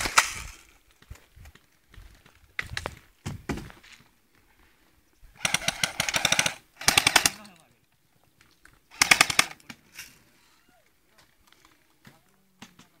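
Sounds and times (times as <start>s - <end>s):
airsoft rifle firing full auto: 5.4s - 7.4s, 8.9s - 9.6s.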